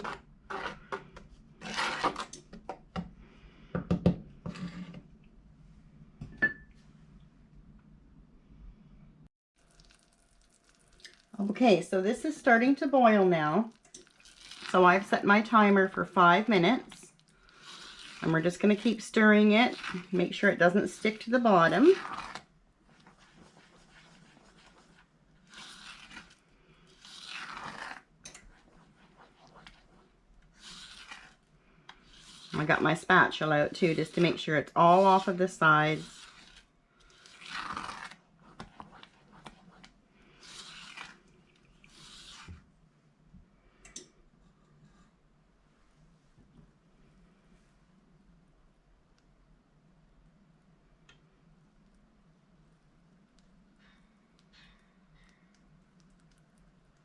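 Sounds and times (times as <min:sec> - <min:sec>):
spoon scraping saucepan: 0:00.0 - 0:02.6, 0:04.5 - 0:05.1, 0:27.0 - 0:31.4, 0:32.0 - 0:41.2.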